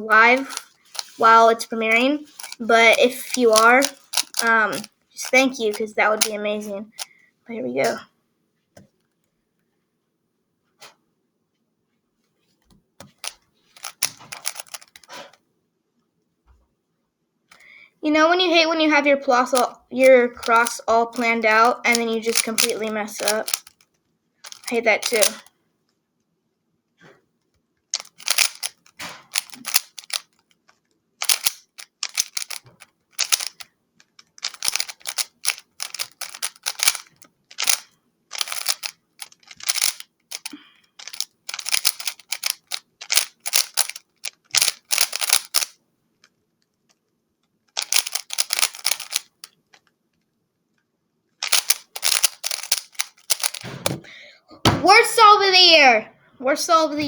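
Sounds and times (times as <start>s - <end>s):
puzzle cube plastic clicking: 0.0s - 7.2s, 13.0s - 15.4s, 19.4s - 25.5s, 28.0s - 46.3s, 47.7s - 49.9s, 51.4s - 54.0s.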